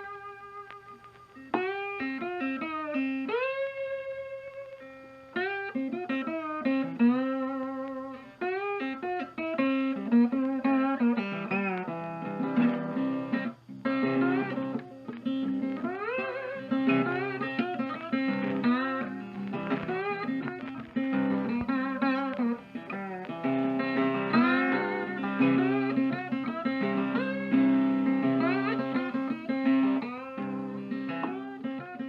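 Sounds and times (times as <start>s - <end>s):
sliding blues guitar melody: 0.0s - 32.0s.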